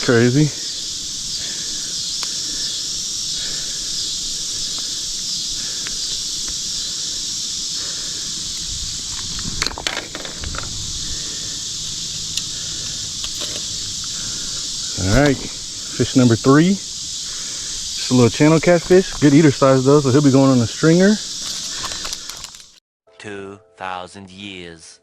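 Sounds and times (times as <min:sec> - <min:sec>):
insects shrilling: 0:00.0 - 0:22.8
clicks and rustling: 0:09.0 - 0:10.7, 0:13.2 - 0:15.8, 0:21.4 - 0:22.8.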